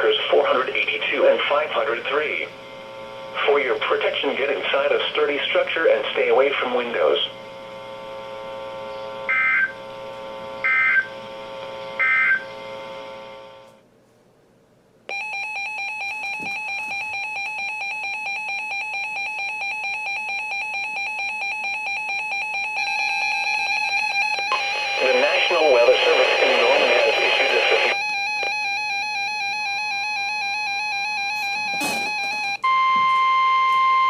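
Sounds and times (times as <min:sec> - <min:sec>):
steady hum: 0:00.0 - 0:15.2, 0:22.0 - 0:32.7.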